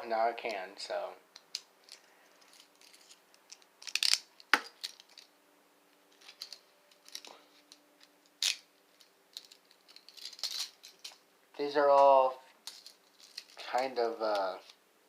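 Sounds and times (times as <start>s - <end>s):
handcuffs clinking: 1.3s - 5.3s, 6.1s - 11.2s, 12.6s - 13.6s.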